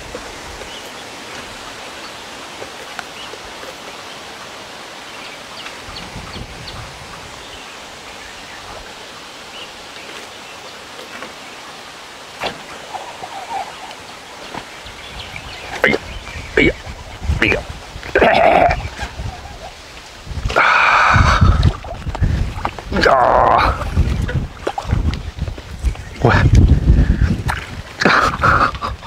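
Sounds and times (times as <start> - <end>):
outdoor background hiss: 0.0 - 22.0.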